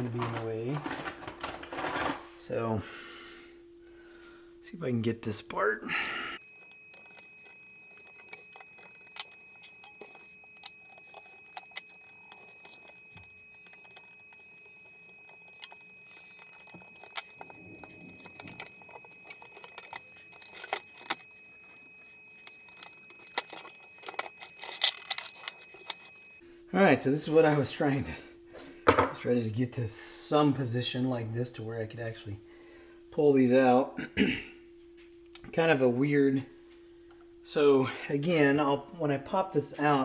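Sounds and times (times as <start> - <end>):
screwdriver clicking on metal chassis: 6.5 - 26.2.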